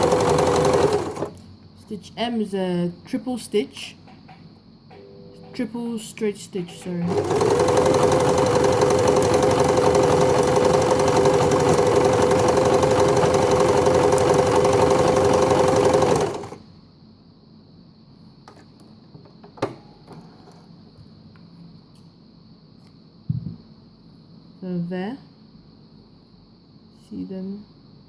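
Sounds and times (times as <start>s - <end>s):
sewing machine running: 0.0s - 1.4s, 6.8s - 16.6s.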